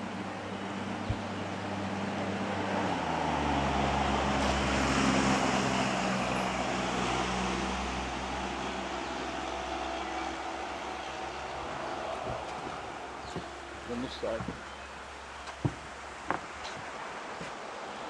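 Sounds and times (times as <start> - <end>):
vehicle driving past: 0.8 - 14.4.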